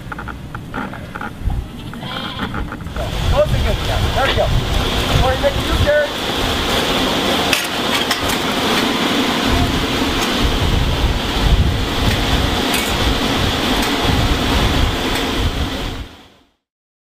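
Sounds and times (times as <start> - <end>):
wind buffeting microphone: 0.0 - 16.3
constant high hiss: 0.0 - 16.6.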